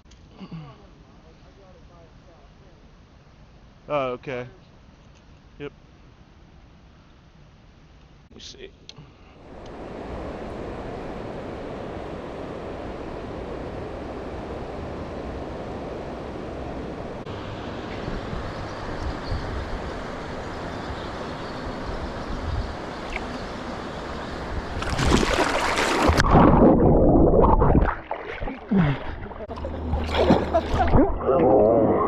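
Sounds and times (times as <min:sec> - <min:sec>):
river water rushing: 0:09.4 - 0:27.1
loud splashing: 0:24.7 - 0:31.4.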